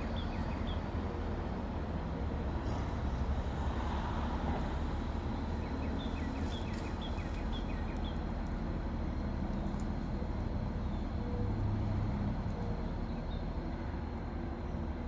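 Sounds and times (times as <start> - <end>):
crane engine droning: 4.3 - 15.0.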